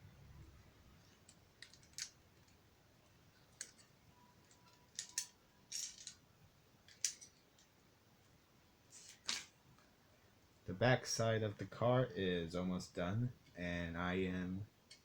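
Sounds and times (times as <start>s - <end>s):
plastic bricks clicking together: 1.3s - 2.6s, 4.5s - 6.2s.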